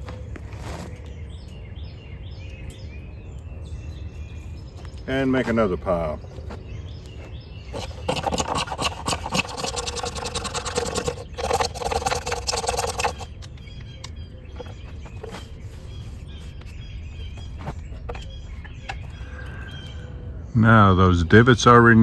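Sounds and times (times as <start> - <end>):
light scrapes and clicks: 4.2 - 19.8
knife scraping wood shavings: 6.4 - 13.5, 14.6 - 19.3.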